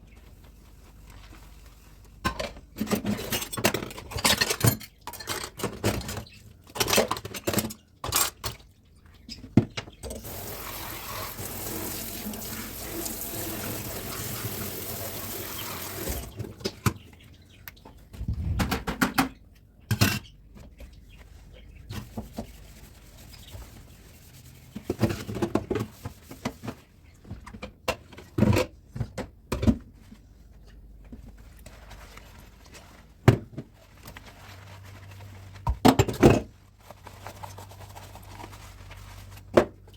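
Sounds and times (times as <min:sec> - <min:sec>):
dishes and cutlery clinking: 0:02.3 - 0:06.2
tap running: 0:10.1 - 0:16.5.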